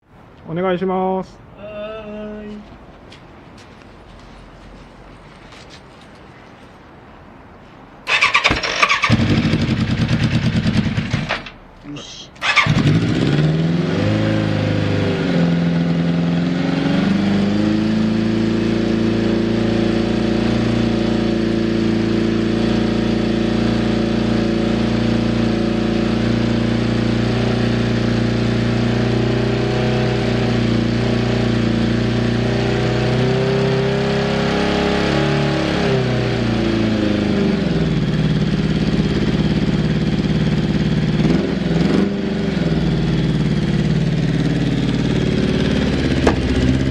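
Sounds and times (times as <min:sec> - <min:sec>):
electric starter cranking: 0:08.1 - 0:09.6
motorcycle engine idling: 0:08.4 - 0:11.3, 0:37.9 - 0:41.2, 0:42.7 - 0:46.9.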